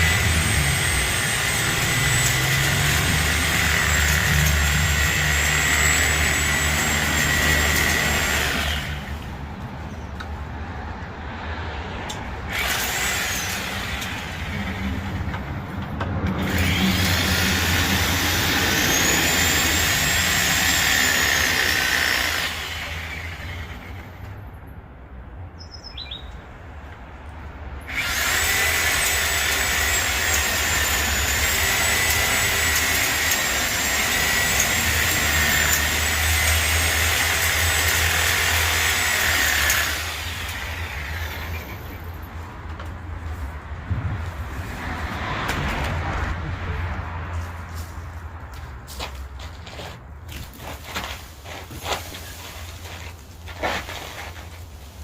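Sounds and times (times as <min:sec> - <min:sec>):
reciprocating saw cutting branches: 0:00.0 - 0:09.3, 0:12.4 - 0:15.3, 0:16.2 - 0:24.2, 0:27.8 - 0:42.1, 0:49.7 - 0:55.0.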